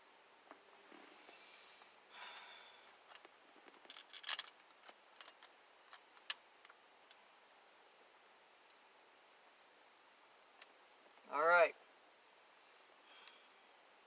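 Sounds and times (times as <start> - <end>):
soft rustle: 0.4 - 5.5
light clicks and metallic clinks: 3.1 - 7.2.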